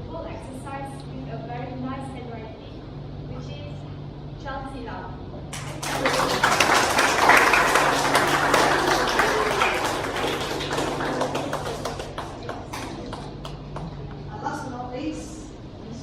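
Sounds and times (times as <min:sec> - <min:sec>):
crowd clapping: 0:05.5 - 0:14.1.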